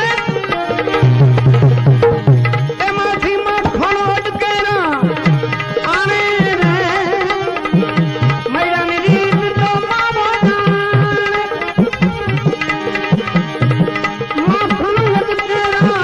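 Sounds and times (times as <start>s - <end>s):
melodic instrument with bending notes: 0.0s - 16.0s
tabla strokes: 0.0s - 16.0s.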